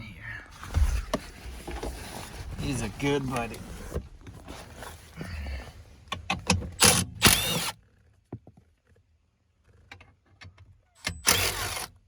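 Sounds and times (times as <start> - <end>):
tool and bolt clicks: 6.1 - 7.8, 11.0 - 12.0
power tool motor whining: 6.8 - 7.8, 11.2 - 12.0.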